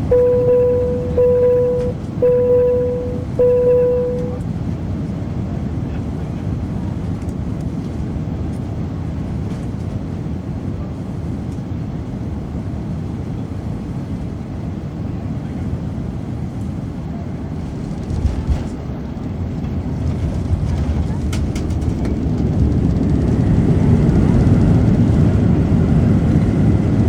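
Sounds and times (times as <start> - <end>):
jet engine rumble: 0.0 - 4.4.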